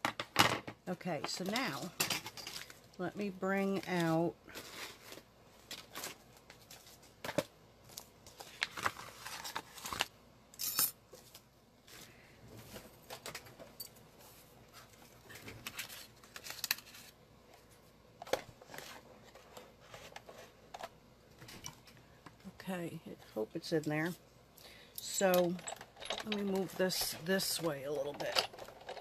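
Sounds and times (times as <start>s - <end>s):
craft supplies rummaged on desk: 0.0s - 24.2s, 24.9s - 29.0s
paper and plastic rustling: 3.6s - 10.2s, 14.1s - 21.5s.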